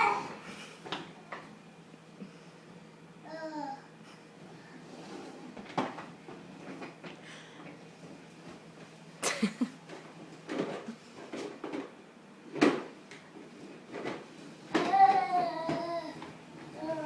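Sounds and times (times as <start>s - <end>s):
toy push mower knocking and clattering: 9.9s - 11.9s, 12.5s - 12.9s, 13.9s - 17.0s.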